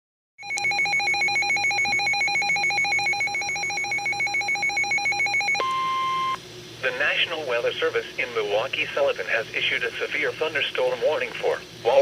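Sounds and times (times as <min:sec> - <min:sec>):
emergency alert warble tone: 0:00.4 - 0:06.4.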